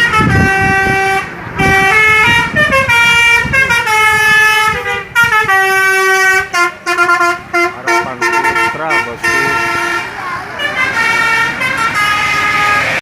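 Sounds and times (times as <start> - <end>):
bus musical horn tune: 0.0 - 13.0
short horn toots: 3.8 - 10.2.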